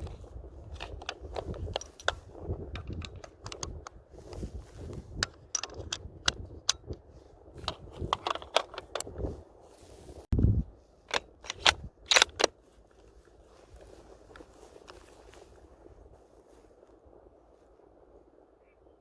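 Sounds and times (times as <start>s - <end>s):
rifle bolt clicks and rattles: 0.0s - 4.0s, 4.9s - 7.0s, 7.6s - 9.3s, 11.0s - 12.6s.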